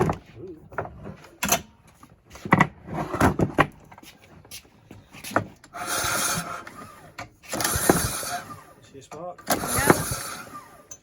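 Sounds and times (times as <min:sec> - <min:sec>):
lawn mower pull-cord cranking: 0:05.7 - 0:08.8, 0:09.4 - 0:11.0.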